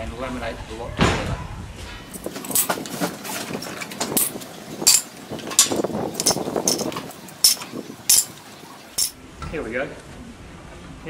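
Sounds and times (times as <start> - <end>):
handling noise: 2.0 - 9.6.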